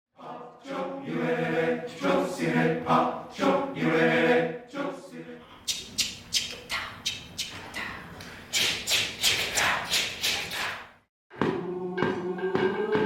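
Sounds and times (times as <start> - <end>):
mixed chorus singing a cappella: 0.2 - 5.6, 11.3 - 13.0.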